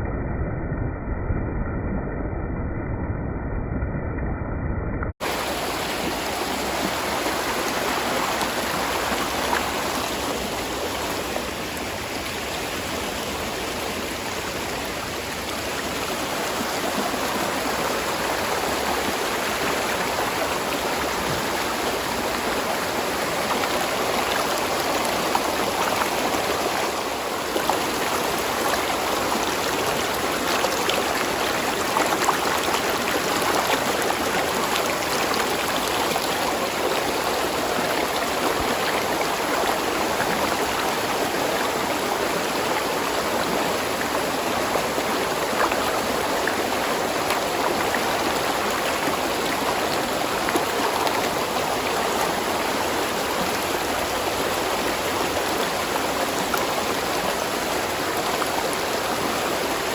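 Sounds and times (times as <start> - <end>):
stream running over rocks: 5.2 - 59.9.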